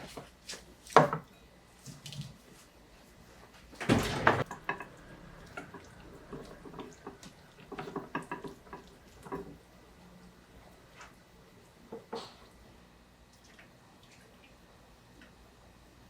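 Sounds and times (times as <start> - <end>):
kitchenware clinking: 3.8 - 9.7
water rushing: 4.0 - 10.4.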